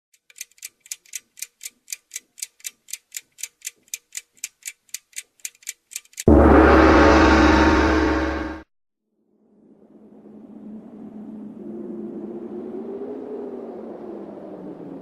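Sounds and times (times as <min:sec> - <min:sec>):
clock ticking: 0:00.1 - 0:06.3
loud dense sustained tone: 0:06.3 - 0:08.7.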